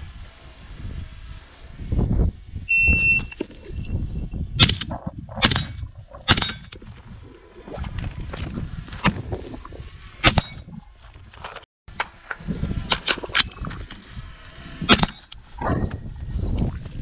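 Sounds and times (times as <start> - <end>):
shot timer start beep: 2.7 - 4.0
sharp rifle shots: 4.6 - 6.8, 14.9 - 15.3.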